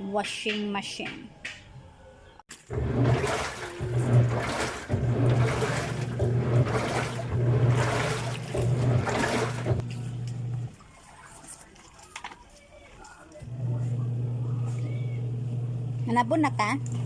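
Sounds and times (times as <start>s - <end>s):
water churning in tub: 2.5s - 9.9s
washing machine motor hum: 2.6s - 11.3s, 13.4s - 17.0s.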